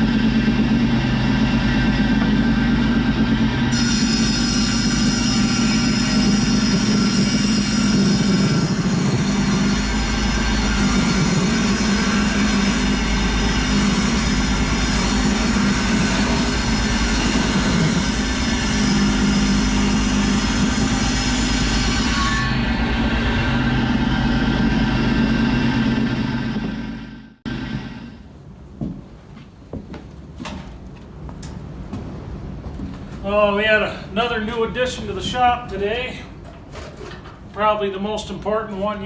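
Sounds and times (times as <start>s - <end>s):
power woodworking machine running: 0.0s - 28.2s.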